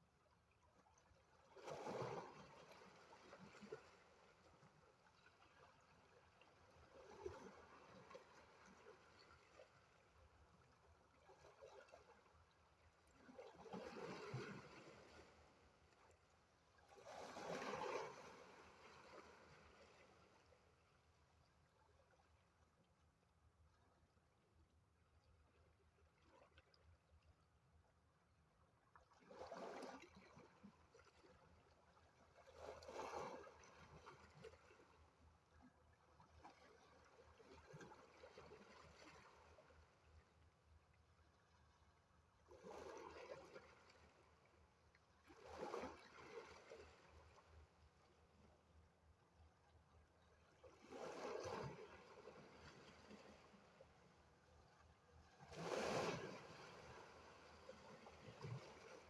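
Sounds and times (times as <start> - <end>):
faint sea waves washing in: 1.5 - 23.3, 50.4 - 59.0.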